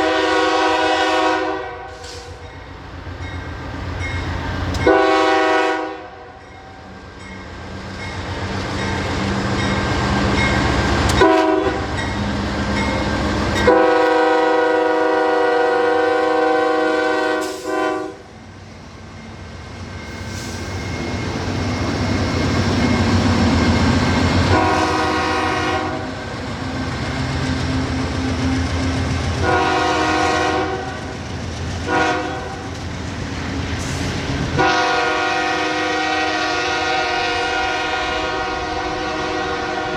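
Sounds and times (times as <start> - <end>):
locomotive air horn blasts: 0.0 - 2.4, 4.8 - 6.4, 11.2 - 11.9, 13.6 - 18.3, 24.5 - 26.2, 29.4 - 31.0, 31.9 - 32.7, 34.6 - 39.9.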